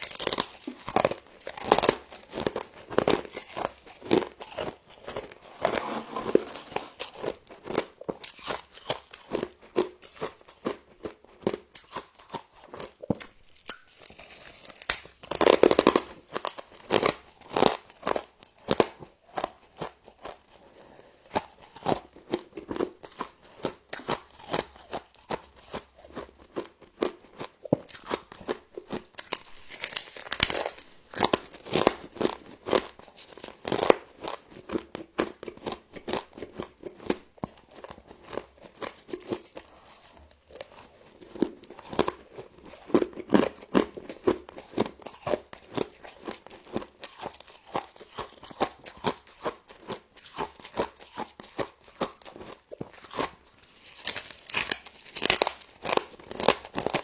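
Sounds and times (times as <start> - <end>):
frost crunching when bitten: 0.0 - 5.4, 11.7 - 18.2, 27.6 - 34.4, 36.8 - 57.0.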